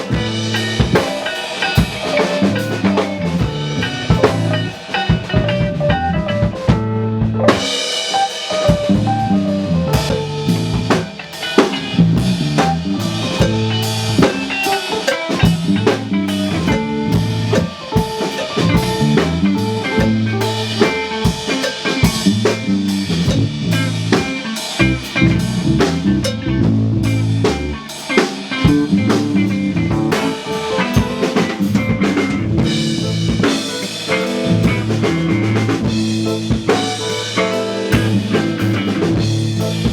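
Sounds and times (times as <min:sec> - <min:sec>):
low bass line: 0:00.0 - 0:01.0, 0:02.4 - 0:07.6, 0:08.7 - 0:11.1, 0:11.9 - 0:14.3, 0:15.5 - 0:17.8, 0:18.6 - 0:20.9, 0:22.2 - 0:27.8, 0:28.7 - 0:30.2, 0:31.7 - 0:33.5, 0:34.5 - 0:36.8, 0:37.9 - 0:39.9
drum kit: 0:00.0 - 0:39.9
rock music: 0:00.0 - 0:39.9.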